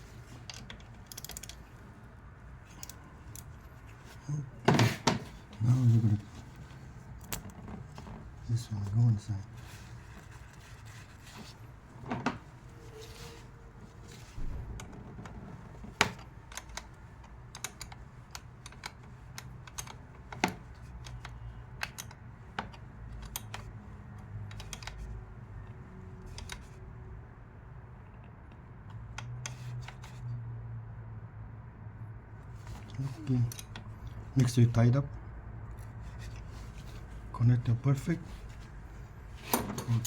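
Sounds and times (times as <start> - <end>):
small clicks and taps of tools: 0.4 - 1.6, 16.0 - 23.7, 24.4 - 25.2.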